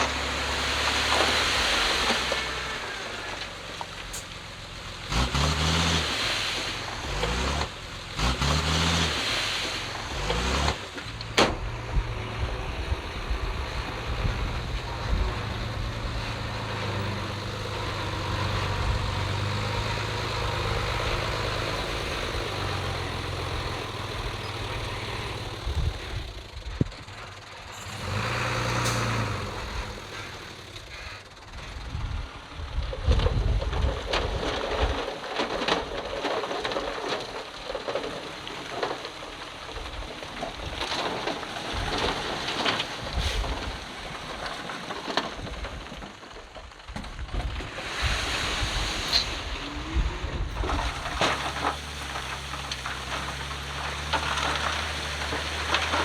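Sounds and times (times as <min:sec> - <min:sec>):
heavy diesel engine revving: 0:00.0 - 0:35.0, 0:48.0 - 0:56.0.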